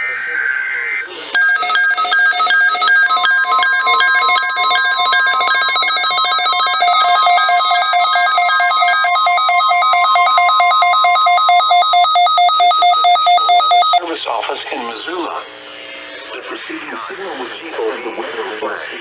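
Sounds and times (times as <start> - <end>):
rapid pulsing electronic alarm: 0.0 - 14.0
steady alarm tone: 0.0 - 14.0.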